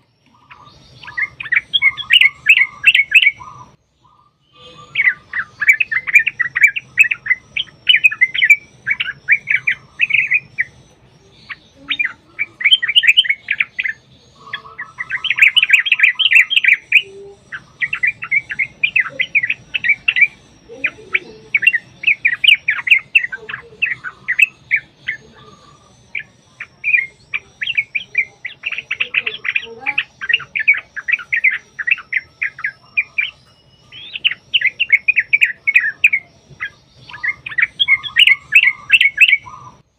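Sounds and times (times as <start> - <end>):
bulbuls chattering song: 0.0 - 39.9.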